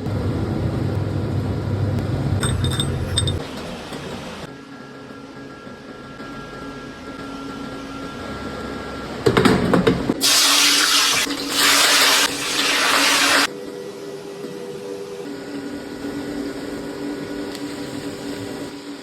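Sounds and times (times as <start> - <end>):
clatter: 2.4 - 4.2.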